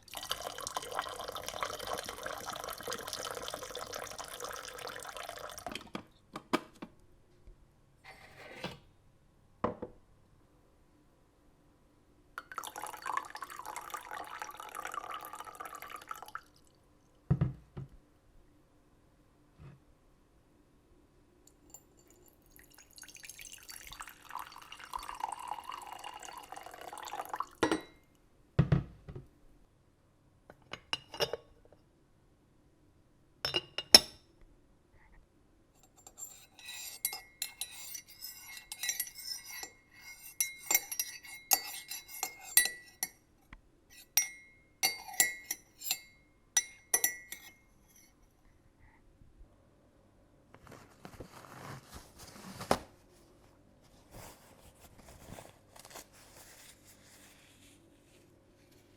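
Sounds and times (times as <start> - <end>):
water pouring into a mug: 0.0 - 5.8, 12.4 - 16.8, 22.2 - 27.6
teapot lid clinking: 24.0 - 28.0, 36.0 - 43.2, 44.0 - 48.1.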